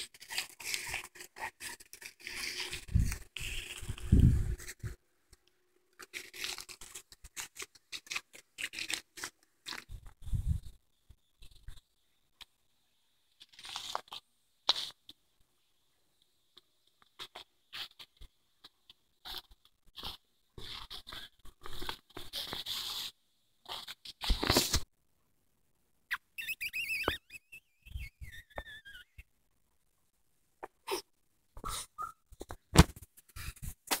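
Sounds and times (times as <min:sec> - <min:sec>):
puppy whining: 0:26.1 - 0:29.3.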